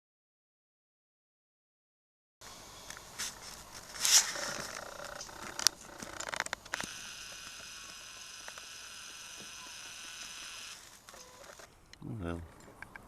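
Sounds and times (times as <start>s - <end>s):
steady hiss: 2.4s - 12.4s.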